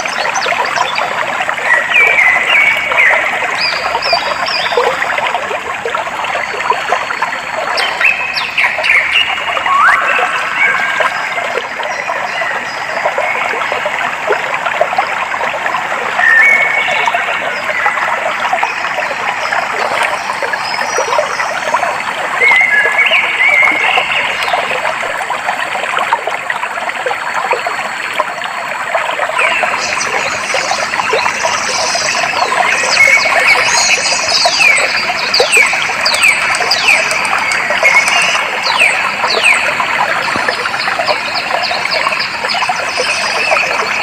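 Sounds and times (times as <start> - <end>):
stream water trickling over stones: 0.0 - 44.0.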